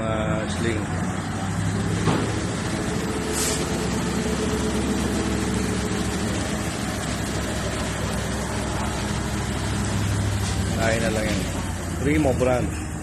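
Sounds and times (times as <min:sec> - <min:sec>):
truck engine idling: 0:00.0 - 0:13.0
short hiss: 0:03.3 - 0:03.7.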